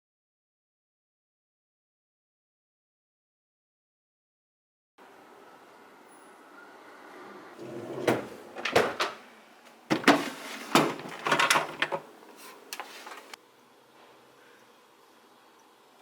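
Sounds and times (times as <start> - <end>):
plastic scraping: 9.9 - 13.4.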